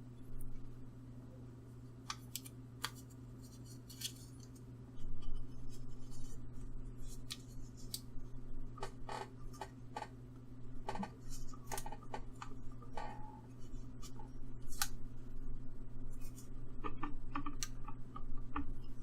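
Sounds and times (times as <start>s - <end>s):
steady low hum: 0.0s - 19.0s.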